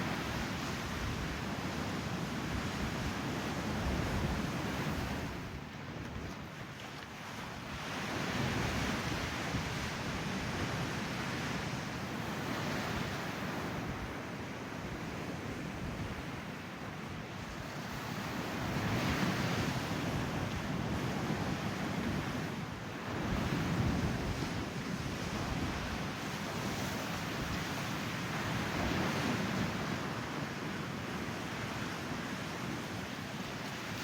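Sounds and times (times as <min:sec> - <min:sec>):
wind buffeting microphone: 0:17.6 - 0:30.0.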